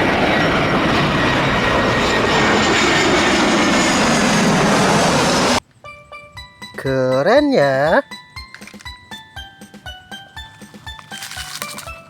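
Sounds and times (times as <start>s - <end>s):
airplane engine drone: 0.0s - 5.6s.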